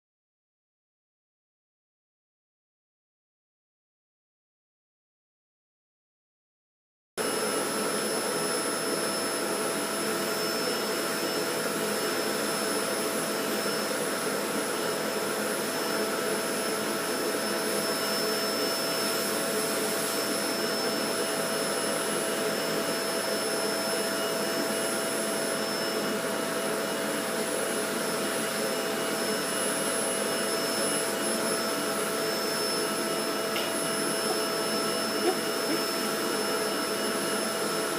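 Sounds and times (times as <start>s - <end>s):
vacuum cleaner running: 7.2s - 37.9s.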